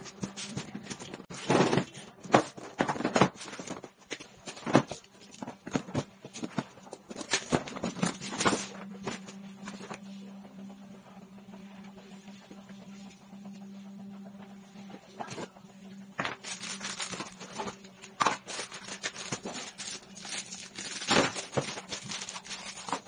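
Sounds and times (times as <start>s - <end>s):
toy packaging rustling and clicking: 16.2s - 23.0s.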